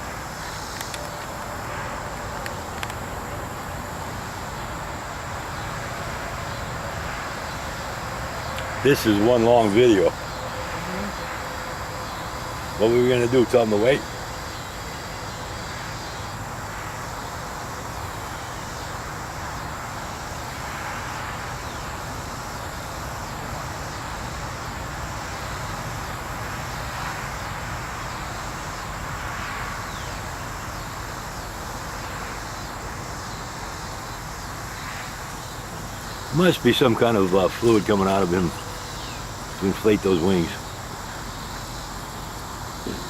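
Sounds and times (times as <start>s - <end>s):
background hiss: 0.0s - 43.0s
insects trilling: 0.0s - 43.0s.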